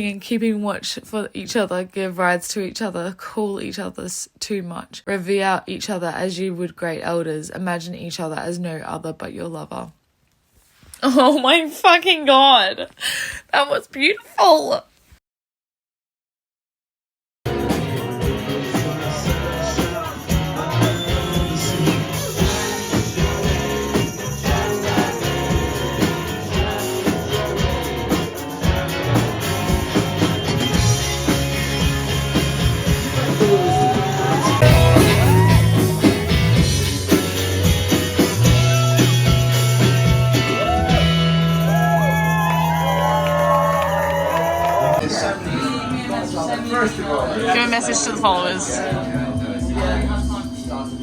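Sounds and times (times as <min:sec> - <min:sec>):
song with singing and steady beat: 0:17.5 - 0:31.5, 0:32.4 - 0:37.9, 0:44.6 - 0:51.0.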